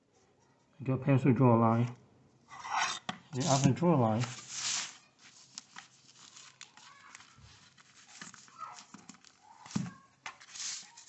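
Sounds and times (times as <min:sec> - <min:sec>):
wood pieces being handled: 0:02.7 - 0:11.0.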